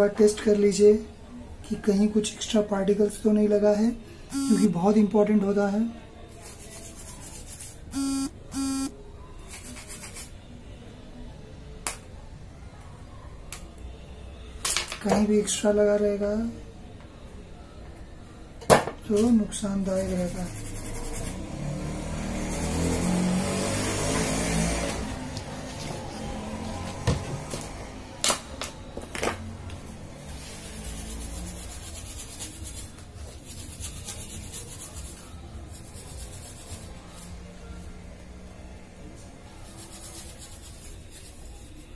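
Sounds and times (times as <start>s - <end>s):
control panel beep: 4.3s - 4.7s, 8.0s - 8.9s
scrubbing a circuit board: 6.3s - 8.9s, 9.5s - 10.3s, 19.9s - 21.4s, 30.3s - 37.4s, 39.6s - 41.9s.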